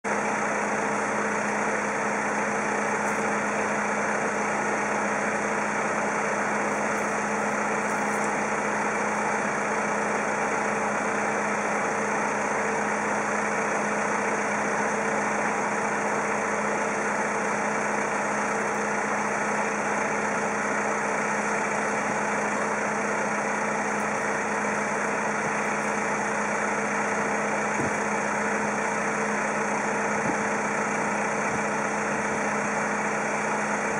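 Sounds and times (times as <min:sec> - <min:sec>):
steady mechanical drone: 0:00.1 - 0:33.9.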